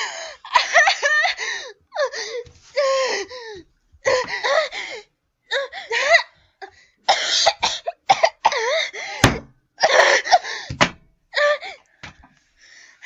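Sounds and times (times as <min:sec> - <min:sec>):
person coughing and groaning: 0:07.1 - 0:10.3.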